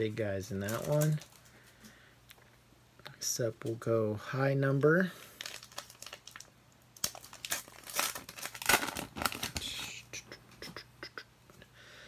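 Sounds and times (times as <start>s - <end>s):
plastic wrapper tearing and crinkling: 0.6s - 1.5s, 5.3s - 9.8s.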